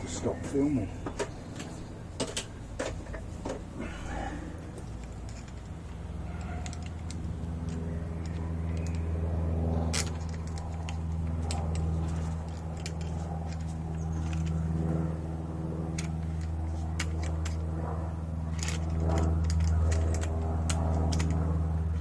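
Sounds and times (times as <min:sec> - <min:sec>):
steady low hum: 0:00.0 - 0:22.0
metal parts clicking and clinking: 0:02.2 - 0:09.1, 0:09.8 - 0:14.9, 0:15.9 - 0:17.8, 0:18.4 - 0:22.0.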